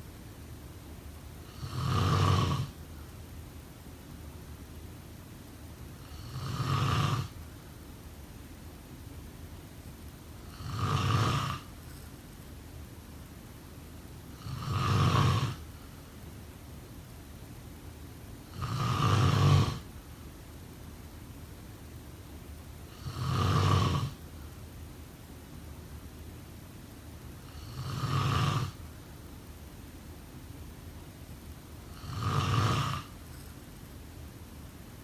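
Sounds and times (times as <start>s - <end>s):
person snoring: 1.4s - 2.8s, 6.0s - 7.4s, 10.5s - 11.7s, 14.4s - 15.6s, 18.5s - 19.9s, 22.9s - 24.2s, 27.5s - 28.8s, 31.8s - 33.4s.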